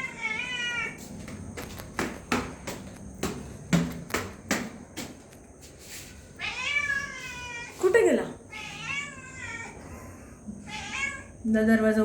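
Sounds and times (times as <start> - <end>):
cat meowing: 0.0 - 1.0, 6.4 - 7.8, 8.5 - 11.4
footsteps: 0.8 - 6.4.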